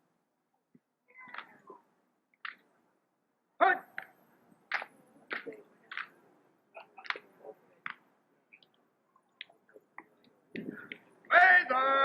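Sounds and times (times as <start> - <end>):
hands slapping rifles: 4.7 - 6.1.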